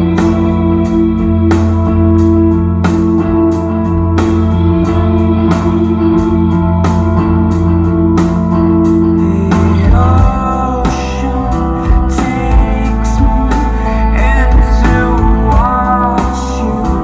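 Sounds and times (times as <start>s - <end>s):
rock music with layered guitars: 0.0s - 17.0s
man singing: 8.9s - 17.0s.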